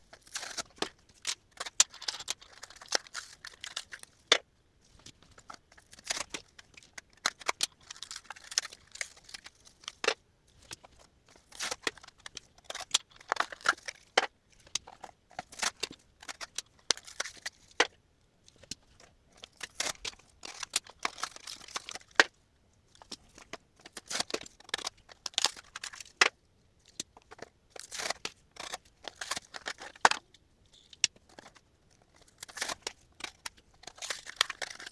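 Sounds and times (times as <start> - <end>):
cardboard and plastic crinkling: 0.1 - 4.2, 27.3 - 30.2, 31.3 - 34.9.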